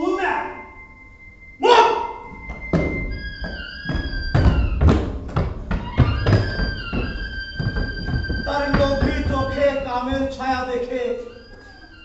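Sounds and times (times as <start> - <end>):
dramatic music with high tones: 0.0 - 12.0
heavy thumps: 2.3 - 10.9.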